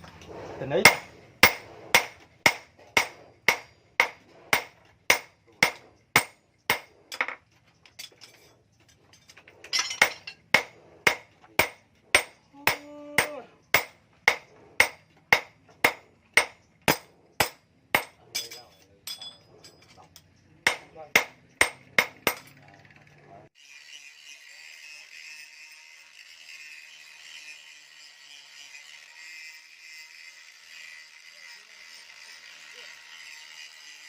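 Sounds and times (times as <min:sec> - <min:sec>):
hammer striking metal on anvil: 0:00.8 - 0:07.4, 0:09.8 - 0:20.0, 0:20.6 - 0:22.6.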